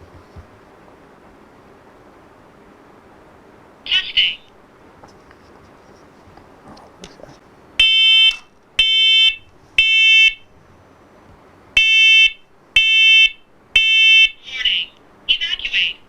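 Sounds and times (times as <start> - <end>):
smoke alarm beeping: 7.8 - 10.5, 11.8 - 14.4.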